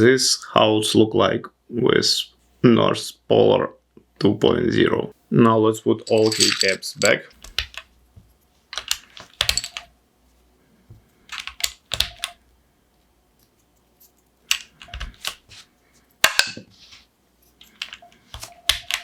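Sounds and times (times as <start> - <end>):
keycaps clicking onto keyboard: 7.4 - 7.9, 8.8 - 9.9, 11.3 - 12.4, 14.5 - 15.4, 17.7 - 19.0.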